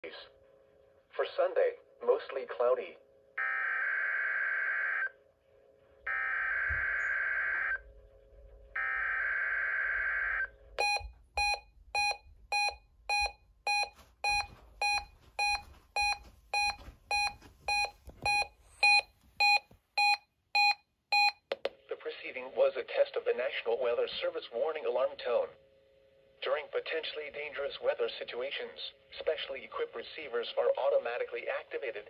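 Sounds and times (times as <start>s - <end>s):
alarm beeping in short pulses: 6.1s - 7.8s
screechy digital tone bursts: 6.1s - 7.8s.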